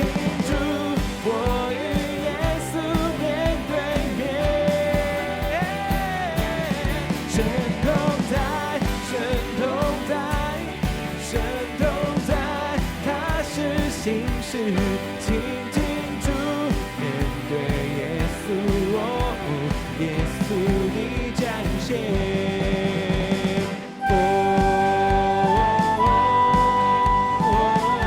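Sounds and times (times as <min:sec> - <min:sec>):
band with steady drum beat: 0:00.0 - 0:28.0
keyboard flute melody: 0:23.9 - 0:28.0.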